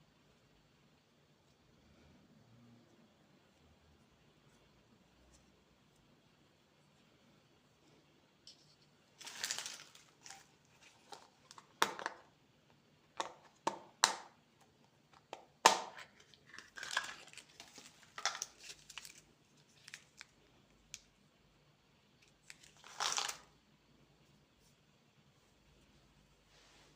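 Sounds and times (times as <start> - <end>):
plastic candy wrappers crinkling: 9.2 - 12.3, 15.3 - 21.1, 22.2 - 23.6.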